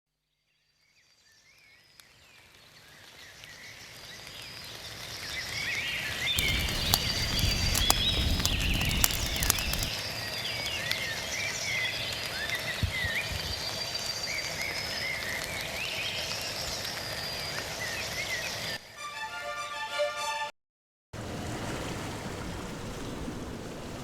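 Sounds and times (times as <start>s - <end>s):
sharp clicks: 6.4s - 9.9s.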